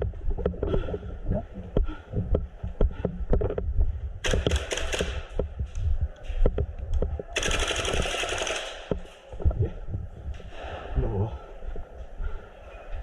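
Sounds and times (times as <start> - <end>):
rapid automatic fire: 4.2 - 5.3, 7.4 - 8.9.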